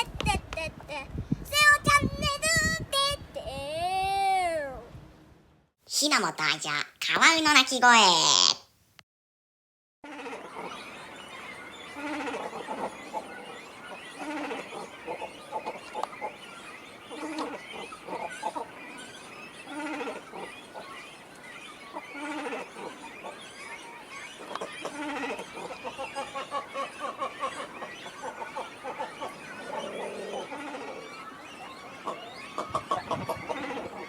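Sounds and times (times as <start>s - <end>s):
cormorants croaking and grunting: 10.1s - 34.0s
rapid pulsed bird calls: 10.1s - 34.0s.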